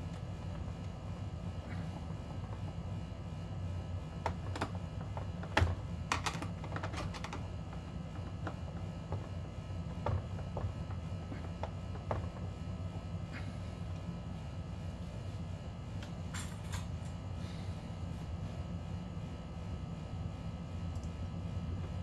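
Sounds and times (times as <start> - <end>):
plastic parts clicking and tapping: 4.2 - 12.4.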